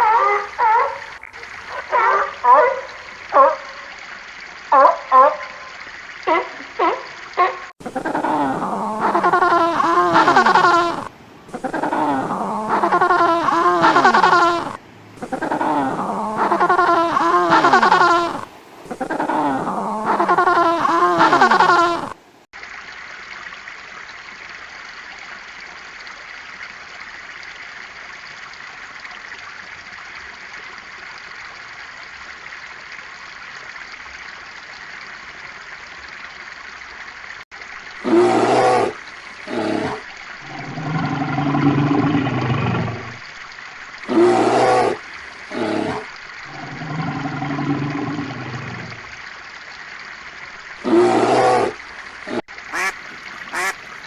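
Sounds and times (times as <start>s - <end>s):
rushing water: 0.0s - 54.0s
animal calling loudly: 53.5s - 53.8s.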